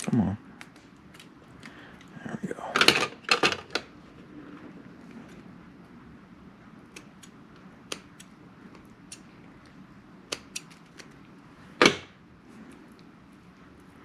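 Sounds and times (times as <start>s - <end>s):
scissors snipping cable: 6.9s - 8.3s, 9.1s - 9.3s, 10.3s - 11.1s.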